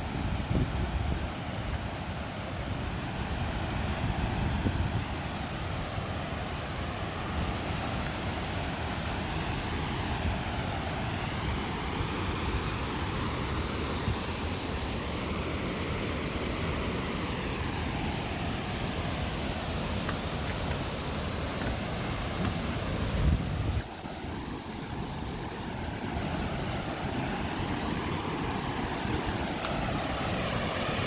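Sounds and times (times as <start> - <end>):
waterfall roaring: 5.2 - 31.0.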